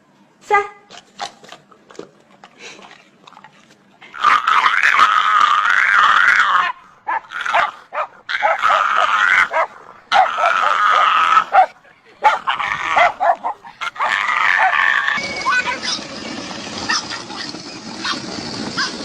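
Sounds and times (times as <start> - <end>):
dog yipping and whimpering: 9.4 - 15.2.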